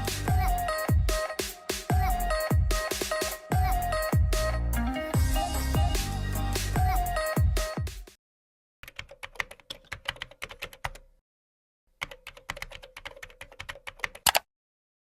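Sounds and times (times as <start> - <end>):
rapid typing on keyboard: 8.8 - 11.1, 12.0 - 14.5.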